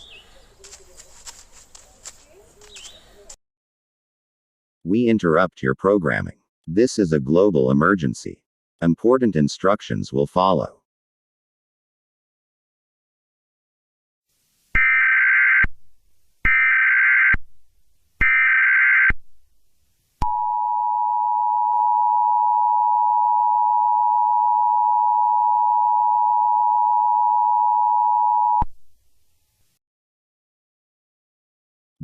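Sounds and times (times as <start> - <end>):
two-tone attention signal beep: 20.2 - 28.7.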